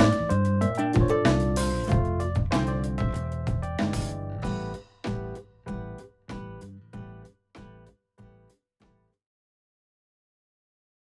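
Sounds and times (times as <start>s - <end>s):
strummed guitar chords: 0.0s - 4.8s.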